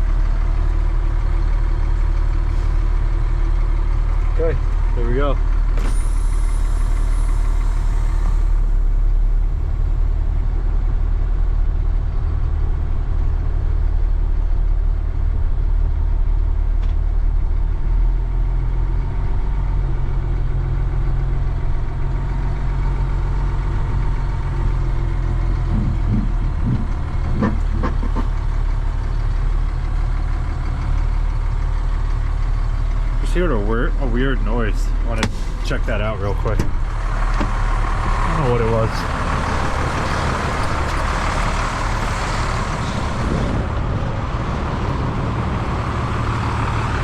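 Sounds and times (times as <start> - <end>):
truck engine idling: 0.0 - 47.0.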